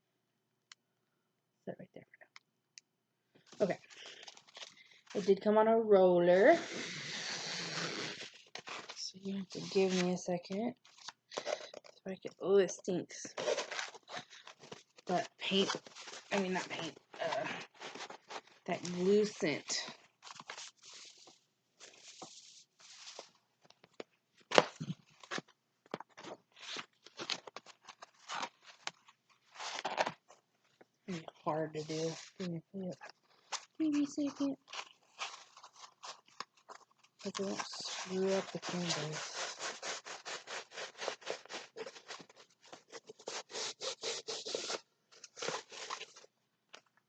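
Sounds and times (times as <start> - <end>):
canvas and plastic crinkling: 31.8 - 43.0
plastic film rubbing and scratching: 31.8 - 46.2.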